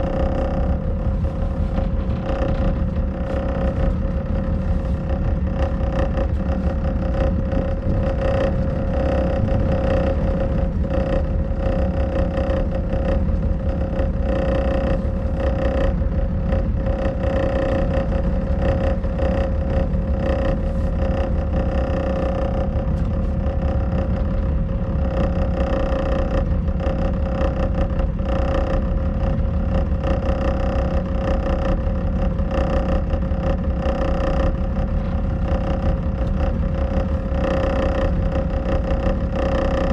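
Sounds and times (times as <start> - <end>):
boat engine droning: 0.0 - 39.9.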